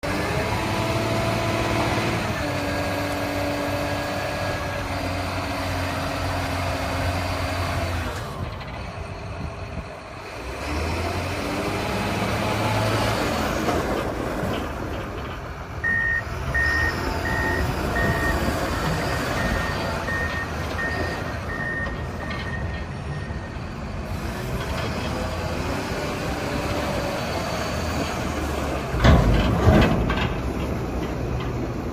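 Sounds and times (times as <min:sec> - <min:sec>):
wheel loader diesel engine: 0:00.0 - 0:31.9
reversing alarm beeping: 0:15.8 - 0:23.6.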